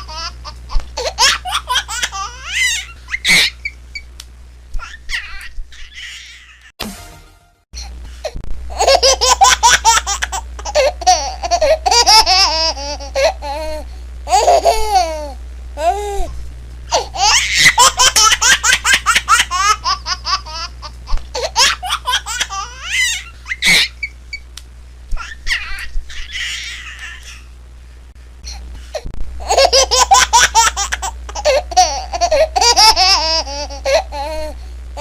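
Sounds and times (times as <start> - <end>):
baby laughing: 0.0 - 3.8, 4.8 - 6.7, 8.7 - 16.0, 16.9 - 24.1, 25.2 - 27.4, 29.4 - 34.6
steady low hum: 0.0 - 35.0.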